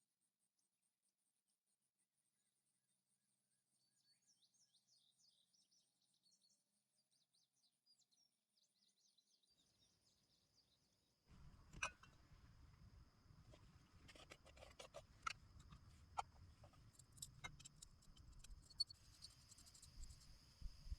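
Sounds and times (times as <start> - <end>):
songbird chirping: 13.6 - 20.9.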